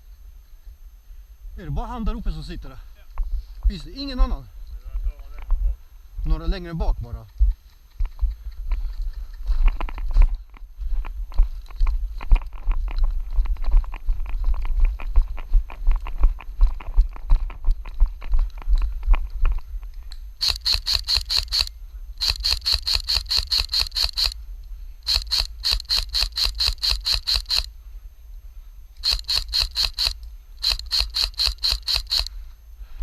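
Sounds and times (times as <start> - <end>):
airsoft rifle firing: 20.4 - 24.4, 25.0 - 27.7, 29.0 - 32.3.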